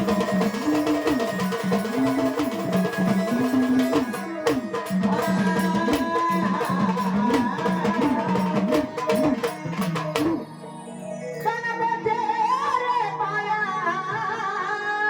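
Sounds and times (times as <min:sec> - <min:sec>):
steady drum beat: 0:00.0 - 0:10.4
instrumental melody with gliding notes: 0:00.0 - 0:15.0.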